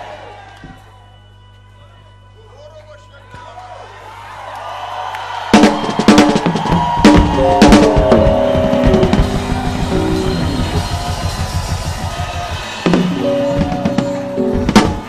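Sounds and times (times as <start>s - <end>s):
drum kit playing: 5.5s - 15.0s
held chords: 6.8s - 15.0s.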